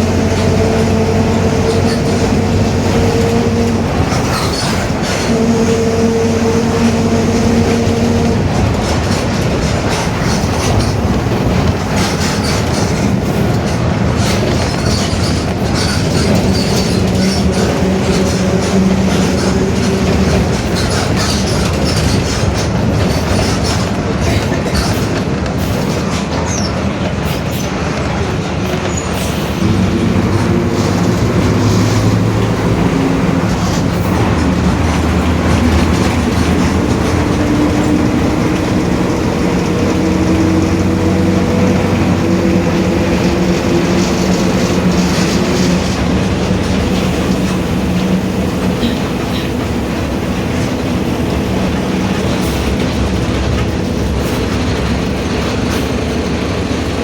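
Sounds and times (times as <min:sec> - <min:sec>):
drivetrain whine: 0:00.0 - 0:24.7, 0:29.6 - 0:57.0
bus diesel engine rumbling: 0:00.0 - 0:57.0
differential growling: 0:29.6 - 0:55.4.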